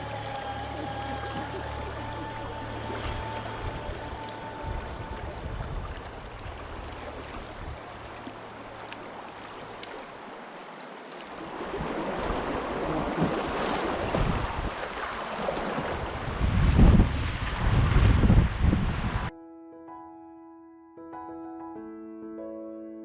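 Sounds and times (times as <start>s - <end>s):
river water rushing: 0.0s - 19.3s
wind buffeting microphone: 3.6s - 7.9s, 11.6s - 14.8s, 15.6s - 19.3s.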